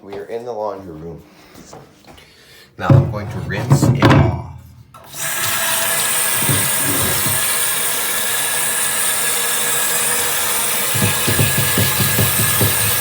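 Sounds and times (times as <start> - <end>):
water running hard from tap: 5.0 - 13.0.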